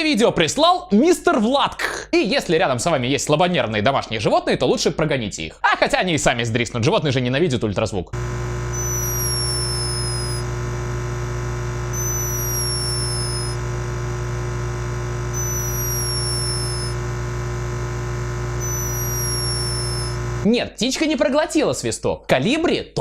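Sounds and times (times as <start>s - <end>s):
steady electrical hum: 8.2s - 20.4s
hummingbird snoring whistle: 8.7s - 10.5s, 11.9s - 13.6s, 15.3s - 17.0s, 18.6s - 20.2s.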